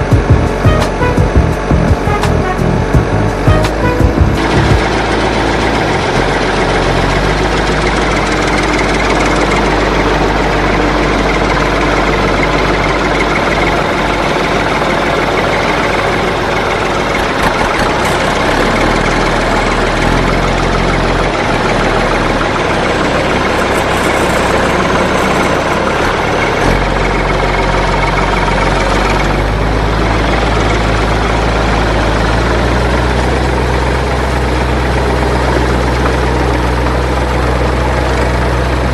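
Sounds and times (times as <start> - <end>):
tractor engine idling: 0.0 - 38.9.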